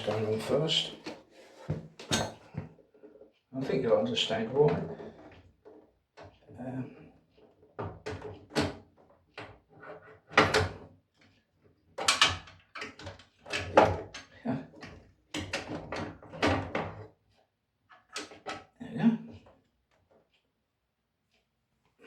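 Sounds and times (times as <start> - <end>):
parts clunking and rattling: 0.0 - 2.8.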